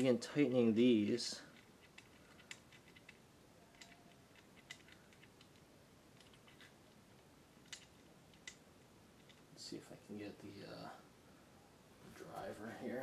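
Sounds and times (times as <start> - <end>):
hand tool and metal clicks: 1.4 - 7.0, 7.6 - 8.6.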